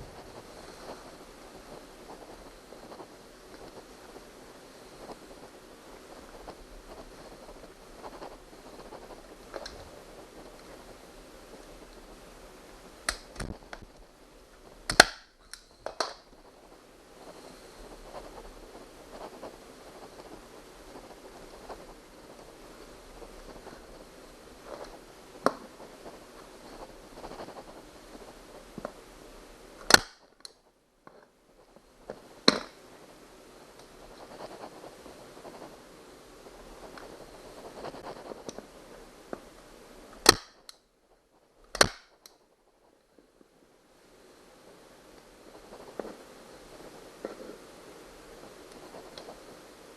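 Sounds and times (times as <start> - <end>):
handling and rustling: 0.0 - 43.6
staple gun snap: 14.9 - 15.3, 29.8 - 30.2, 40.2 - 40.6, 41.7 - 42.1.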